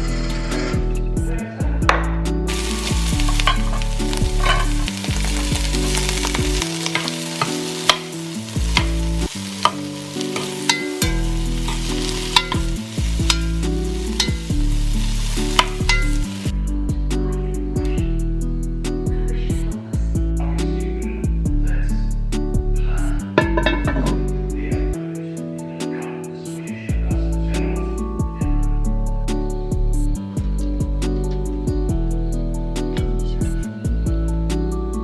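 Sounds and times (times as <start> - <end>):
food sizzling in a pan: 2.5 - 16.5
utensil clicking against pan: 3.3 - 4.9, 6.9 - 9.0, 9.6 - 13.6.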